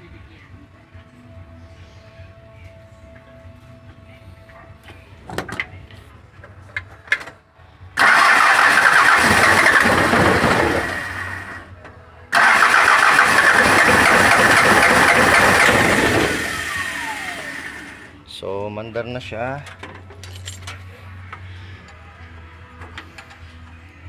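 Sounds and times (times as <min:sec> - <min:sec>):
diesel engine cranking on starter: 0:08.0 - 0:11.7, 0:12.3 - 0:18.2.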